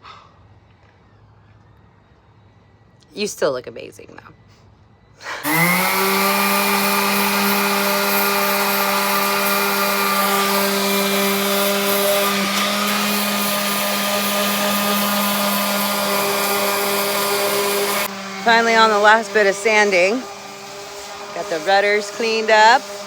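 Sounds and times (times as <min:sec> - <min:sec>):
electric sander running: 0:05.2 - 0:23.0.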